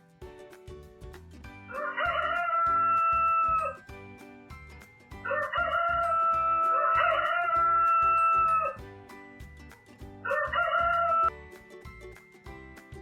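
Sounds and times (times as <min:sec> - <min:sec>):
background music with steady beat: 0:00.0 - 0:13.0
rooster crowing: 0:01.7 - 0:03.8, 0:05.3 - 0:08.8, 0:10.3 - 0:11.3.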